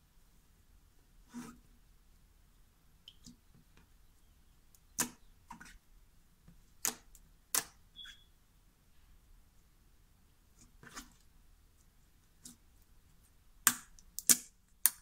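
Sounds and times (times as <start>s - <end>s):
slime squishing with sticky clicks: 4.7s - 5.7s, 6.8s - 8.2s, 13.6s - 15.0s.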